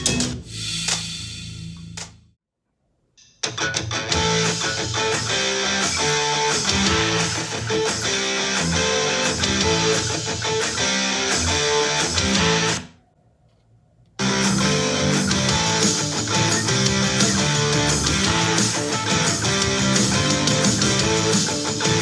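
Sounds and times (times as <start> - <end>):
guitar music with steady beat: 3.3 - 12.8, 14.2 - 22.0.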